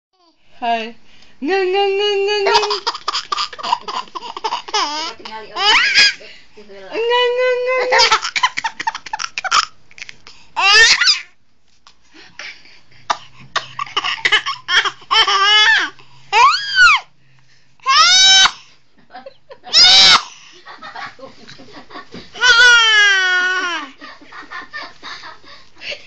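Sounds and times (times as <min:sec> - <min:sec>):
small child laughing: 0:02.4 - 0:06.2, 0:07.8 - 0:11.3, 0:21.4 - 0:24.0.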